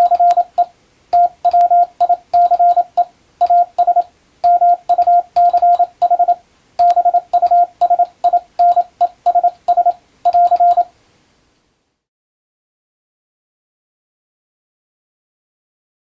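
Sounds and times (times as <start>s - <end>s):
morse code tone: 0.0s - 10.9s.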